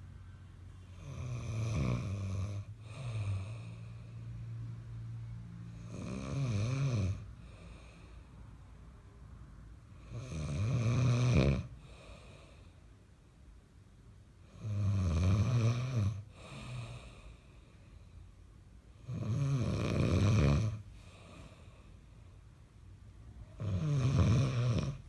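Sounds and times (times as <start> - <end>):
man snoring: 0.9 - 4.2, 5.7 - 8.2, 9.9 - 12.6, 14.4 - 17.4, 19.0 - 21.6, 23.5 - 25.0.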